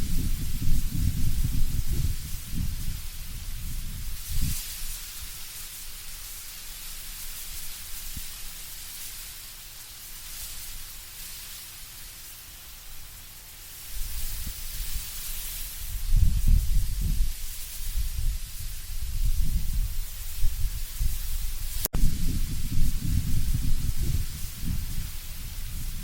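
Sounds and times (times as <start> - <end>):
deep wind gusts rumbling: 0.0 - 4.6, 15.8 - 26.0
leaves rustling in wind: 0.0 - 26.0.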